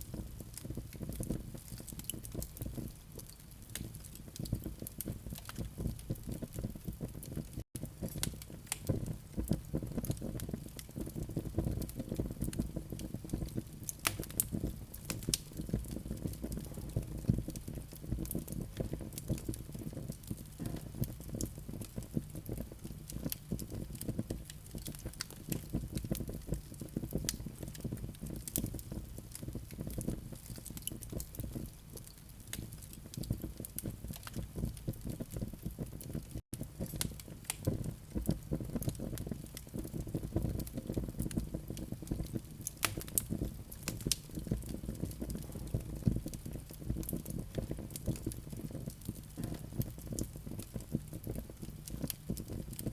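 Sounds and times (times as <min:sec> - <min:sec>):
low fire rumble: 0:00.0 - 0:52.9
wood fire crackling: 0:00.0 - 0:52.9
sharp pops and snaps: 0:12.2 - 0:16.8, 0:17.4 - 0:52.9.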